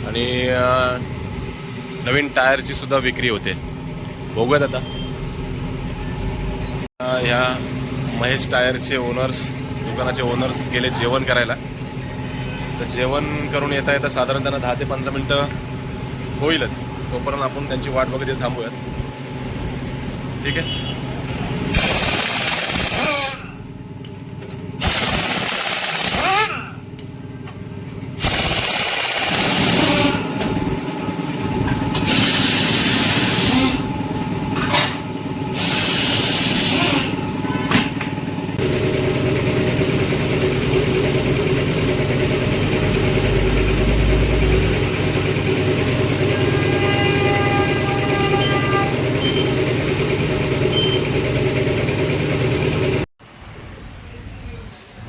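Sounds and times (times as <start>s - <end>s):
mechanical hum: 0.0s - 55.0s
loud air hissing bursts: 21.7s - 23.5s, 24.8s - 26.7s, 28.2s - 30.3s, 32.0s - 33.9s, 35.5s - 37.2s.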